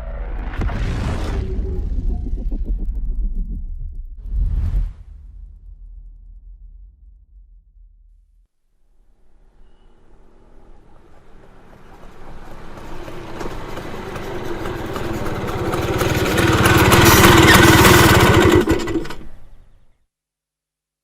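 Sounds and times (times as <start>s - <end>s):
scooter engine approaching: 10.0s - 19.8s.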